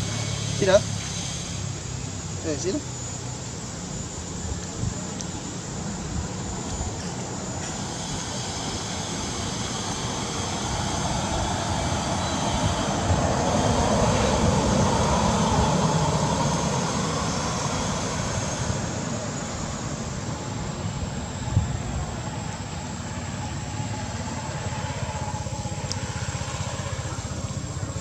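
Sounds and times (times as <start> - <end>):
aircraft engine passing overhead: 0.0 - 28.0.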